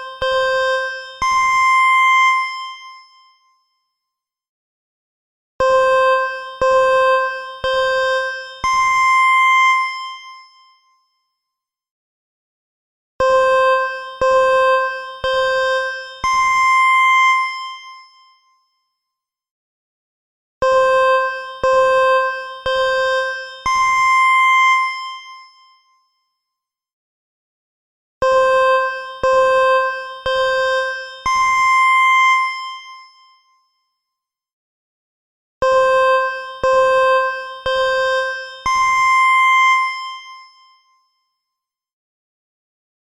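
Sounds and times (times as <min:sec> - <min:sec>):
electronic countdown beeps: 0:00.0 - 0:02.7, 0:05.6 - 0:10.3, 0:13.2 - 0:17.7, 0:20.6 - 0:25.3, 0:28.2 - 0:32.8, 0:35.6 - 0:40.4.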